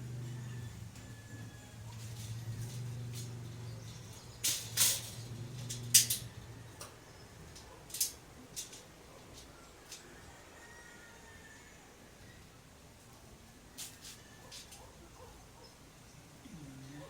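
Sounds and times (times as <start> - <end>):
low steady hum: 0.0 - 8.8
metal rack parts clinking: 2.0 - 10.0.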